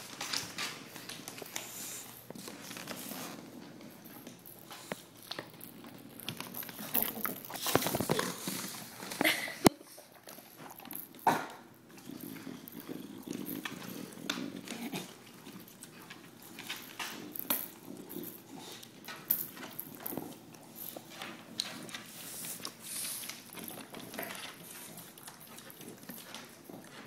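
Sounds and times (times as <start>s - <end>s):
animals crunching and chewing: 0.0s - 27.0s.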